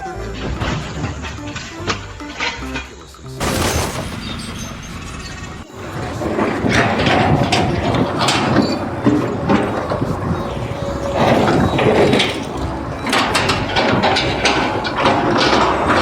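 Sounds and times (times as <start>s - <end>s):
mechanical clattering and knocking: 0.3s - 16.0s.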